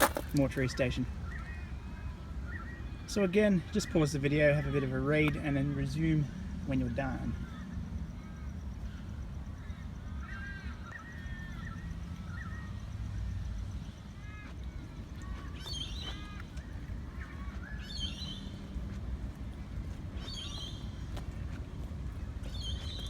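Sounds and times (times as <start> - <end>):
birds chirping: 0.0 - 23.0
bird chatter: 9.6 - 23.0
steady low rumble: 11.8 - 23.0.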